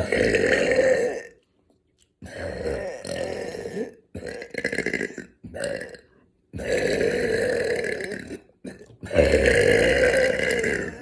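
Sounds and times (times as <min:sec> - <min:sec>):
woman burping: 0:06.6 - 0:11.0.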